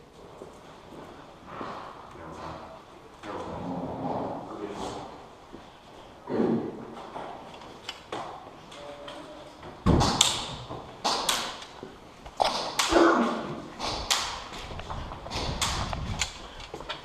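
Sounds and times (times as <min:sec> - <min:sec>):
sharp knocks and thuds: 0:09.8 - 0:11.6, 0:12.4 - 0:16.4.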